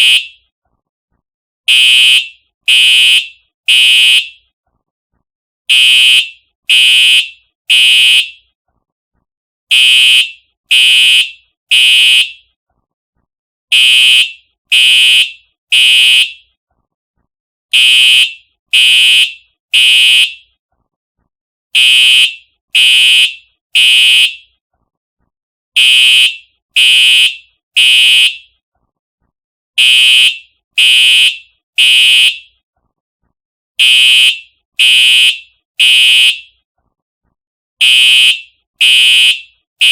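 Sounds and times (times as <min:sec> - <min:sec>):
fire alarm horn blasts: 0:00.0 - 0:00.4, 0:01.7 - 0:04.4, 0:05.7 - 0:08.5, 0:09.7 - 0:12.4, 0:13.7 - 0:16.5, 0:17.7 - 0:20.5, 0:21.8 - 0:24.5, 0:25.8 - 0:28.6, 0:29.8 - 0:32.6, 0:33.8 - 0:36.6, 0:37.8 - 0:39.9.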